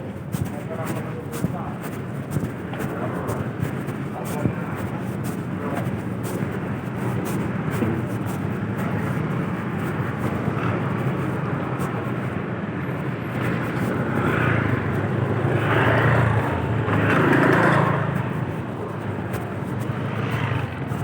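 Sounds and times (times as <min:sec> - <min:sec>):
vehicle engine running: 0:00.0 - 0:21.0.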